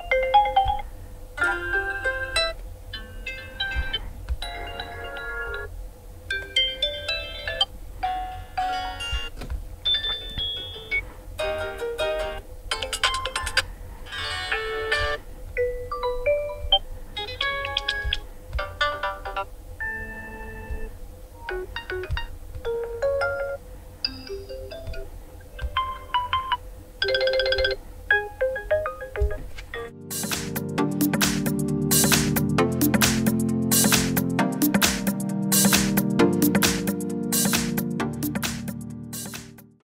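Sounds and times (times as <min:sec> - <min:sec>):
smartphone ringtone melodies: 0:00.0 - 0:00.8, 0:01.4 - 0:03.8, 0:04.4 - 0:05.7, 0:25.7 - 0:30.3
phone ringtone chime tunes: 0:25.8 - 0:30.0.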